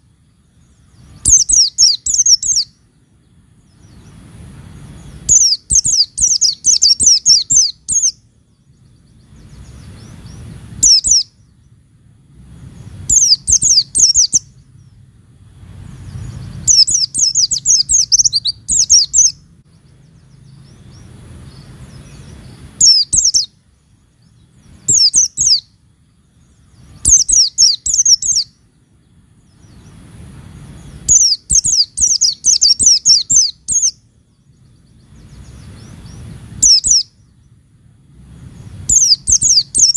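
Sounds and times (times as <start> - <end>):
bird twittering: 0.0 - 2.8, 3.6 - 11.8, 12.6 - 15.1, 15.8 - 28.6, 29.4 - 37.6, 38.4 - 39.9.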